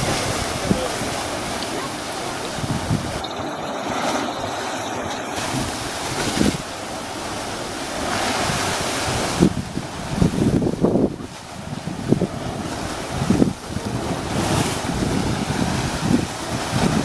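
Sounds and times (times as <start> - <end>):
sea waves washing: 0.0 - 17.0
wind buffeting microphone: 0.0 - 17.0.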